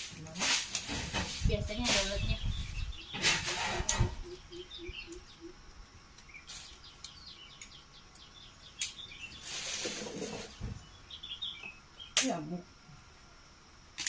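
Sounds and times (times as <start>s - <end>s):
small birds chirping: 1.4s - 12.8s
short rustling hiss: 6.3s - 7.0s, 9.3s - 10.6s.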